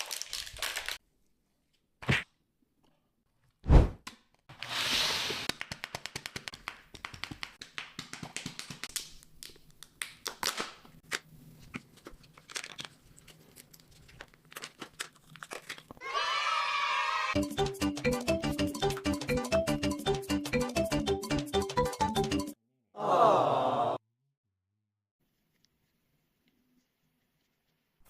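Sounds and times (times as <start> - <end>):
foil wrapper crinkling: 0.0 - 1.0, 12.0 - 16.0
foil wrapper tearing: 0.0 - 1.0, 13.6 - 16.0.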